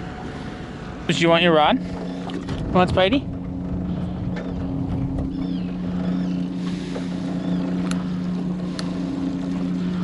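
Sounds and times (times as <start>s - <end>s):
boat motor humming: 0.0s - 10.0s
light clicks: 7.8s - 8.1s.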